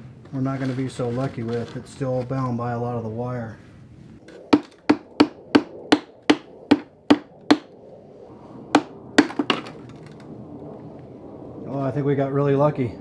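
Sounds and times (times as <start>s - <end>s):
hammer tapping on metal plate: 4.6s - 7.7s.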